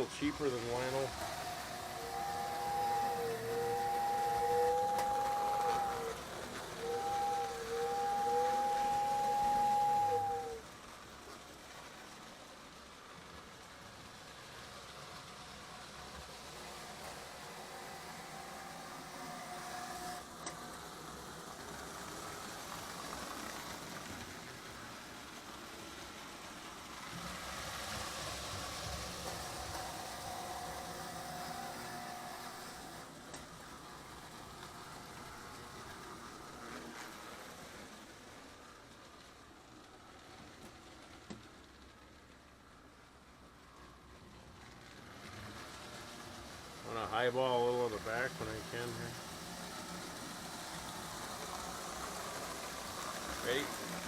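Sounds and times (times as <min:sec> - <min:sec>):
toy train two-tone whistle: 0:00.0 - 0:11.0, 0:16.3 - 0:24.0, 0:26.9 - 0:33.2
toy train motor and wheels whirring: 0:00.0 - 0:54.0.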